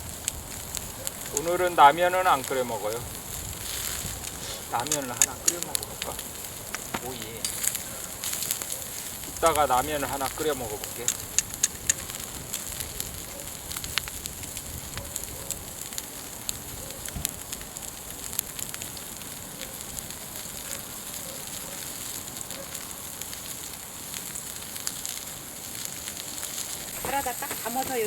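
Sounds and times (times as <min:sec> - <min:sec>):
fire crackling and popping: 0:00.0 - 0:28.0
meat sizzling on grill: 0:00.0 - 0:28.0.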